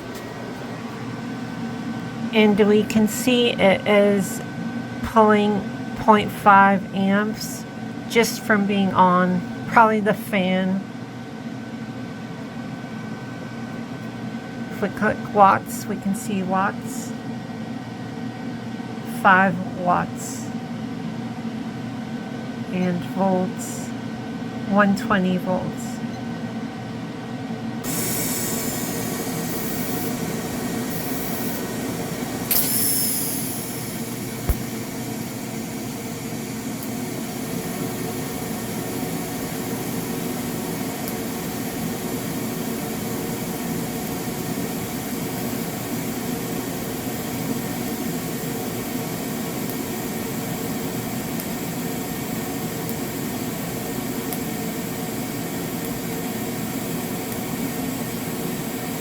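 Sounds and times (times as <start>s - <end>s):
cooling fan hum: 0.0s - 59.0s
welding arc hiss: 27.8s - 59.0s
arc crackle: 27.9s - 42.8s.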